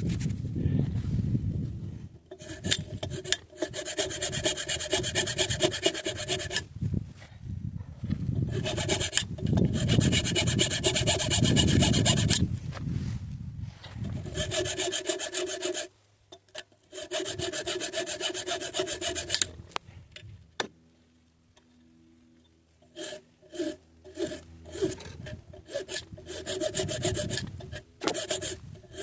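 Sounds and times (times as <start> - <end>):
rapid filing strokes: 2.3 - 6.7, 8.5 - 12.4, 14.2 - 15.9, 16.8 - 19.5, 22.9 - 29.0.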